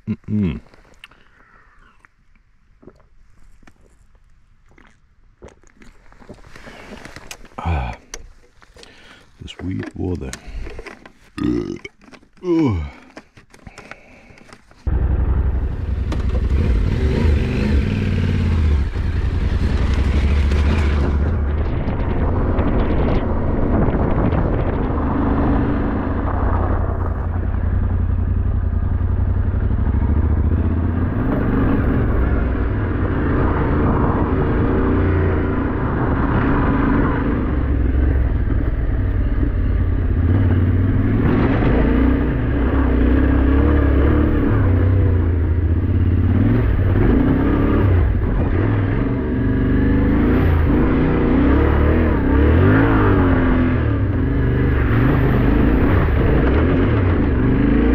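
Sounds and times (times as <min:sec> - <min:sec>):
motorcycle engine revving: 0:14.9 - 0:57.9.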